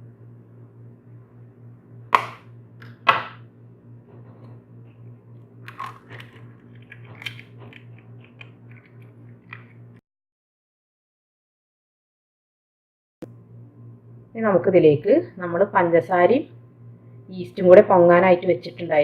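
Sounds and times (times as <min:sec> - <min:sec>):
steady low hum: 0:00.0 - 0:10.0, 0:13.2 - 0:19.0
eggshell clicks and crackles: 0:05.6 - 0:09.8.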